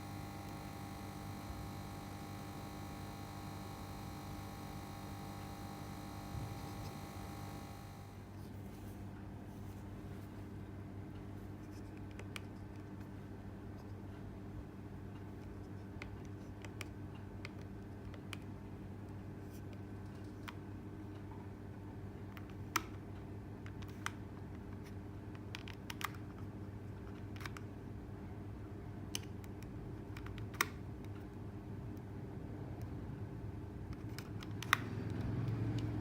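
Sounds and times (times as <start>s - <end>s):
steady low hum: 0.0s - 11.9s.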